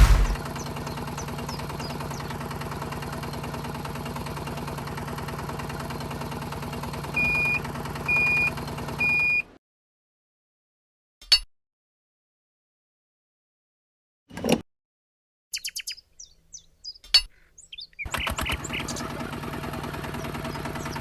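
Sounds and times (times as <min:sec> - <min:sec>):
small motor running: 0:18.1 - 0:21.0.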